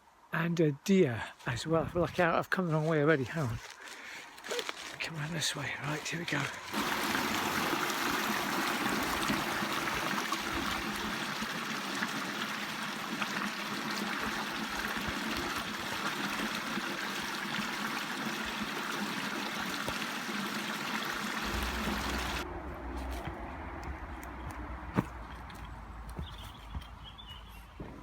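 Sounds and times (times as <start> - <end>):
stream water rushing: 6.0 - 23.6.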